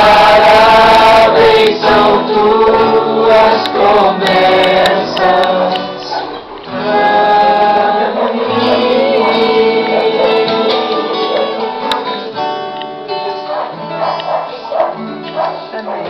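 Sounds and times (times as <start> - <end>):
group singing worship song: 0.0 - 12.4.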